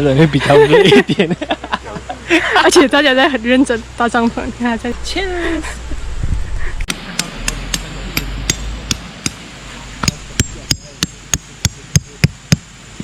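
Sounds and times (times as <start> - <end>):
tent pegs being hammered: 6.9 - 12.8.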